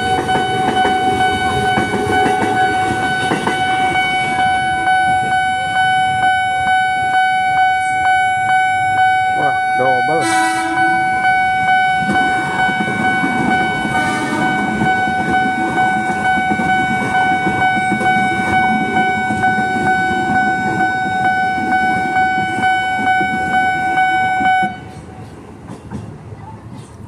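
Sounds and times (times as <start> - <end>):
level-crossing alarm tone: 0.0 - 24.9
electric train rumbling: 0.0 - 27.0.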